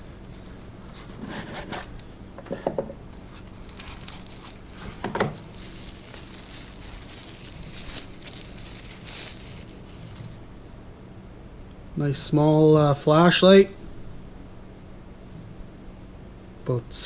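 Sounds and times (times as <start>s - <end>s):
cardboard packaging rubbing and sliding: 0.0s - 2.0s, 3.2s - 10.5s
steady low hum: 0.0s - 17.0s.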